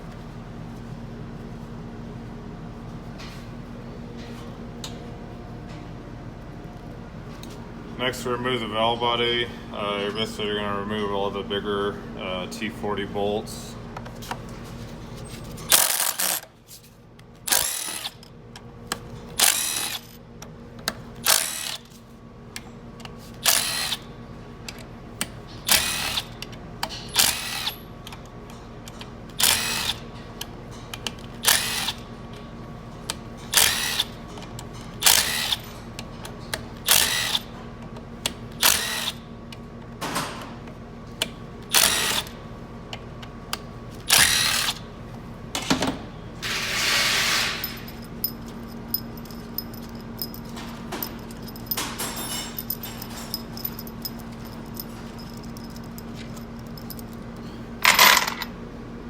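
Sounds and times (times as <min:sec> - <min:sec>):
cordless power tool bursts: 0:36.9 - 0:37.4, 0:41.7 - 0:42.3, 0:44.1 - 0:44.8, 0:46.4 - 0:47.9.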